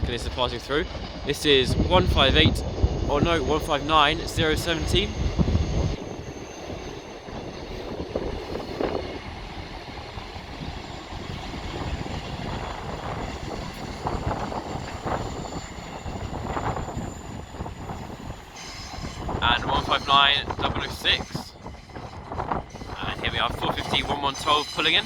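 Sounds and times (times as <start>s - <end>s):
diesel train rumbling: 0.0s - 25.0s
wind buffeting microphone: 0.0s - 25.0s.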